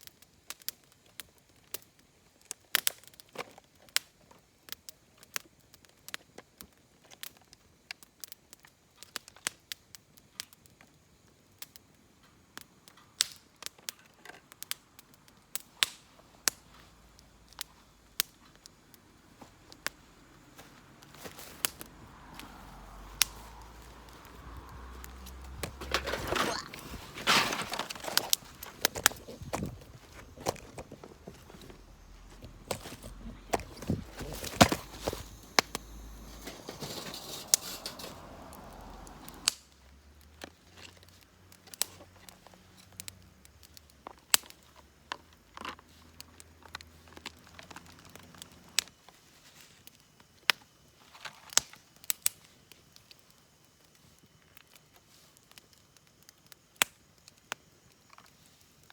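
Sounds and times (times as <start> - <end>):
wood fire crackling and popping: 0.0 - 58.9
wind rumble on microphone: 29.0 - 30.7.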